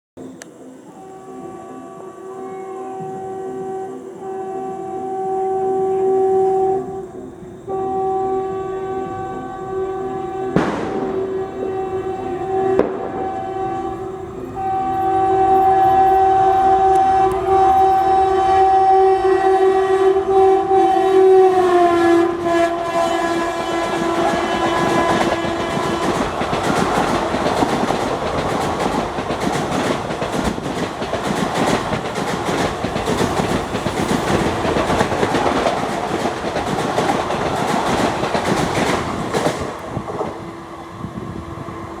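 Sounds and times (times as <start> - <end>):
two-tone locomotive horn: 0.2 - 42.0
train wheels clattering on rails: 20.1 - 41.4.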